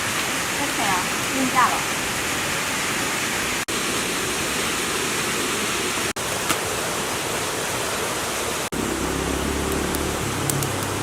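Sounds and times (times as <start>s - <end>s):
low hum: 8.7s - 11.0s.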